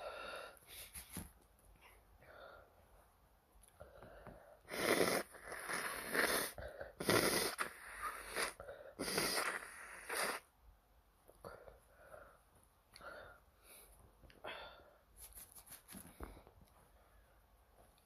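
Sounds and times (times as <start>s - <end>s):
forceful nasal bursts of breath: 4.6s - 10.5s.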